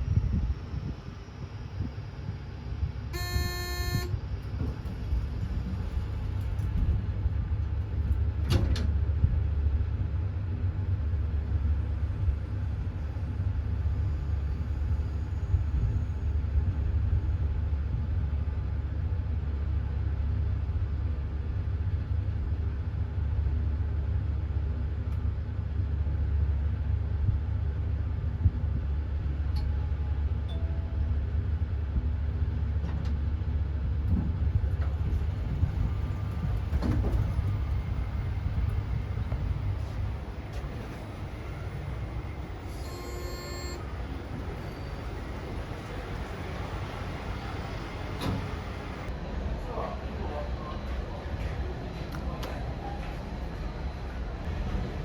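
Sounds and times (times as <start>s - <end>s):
elevator rumble and hum: 0.0s - 55.0s
short electronic tone: 3.2s - 4.2s, 42.6s - 43.9s.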